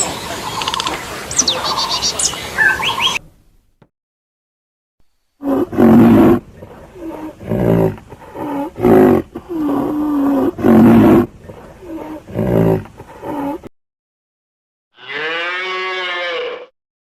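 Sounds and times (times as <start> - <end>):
large animal calling loudly: 15.0 - 16.7.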